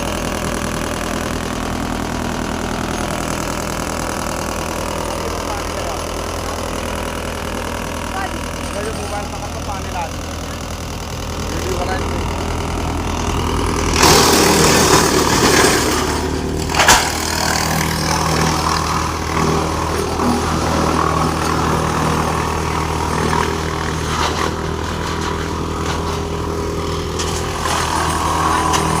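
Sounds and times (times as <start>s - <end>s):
wood chipper running: 0.0s - 29.0s
sharp crack: 13.9s - 17.8s.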